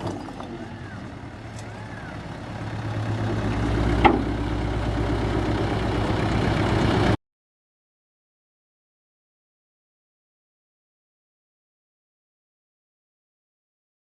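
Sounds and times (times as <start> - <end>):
heavy vehicle engine running: 0.0 - 7.2.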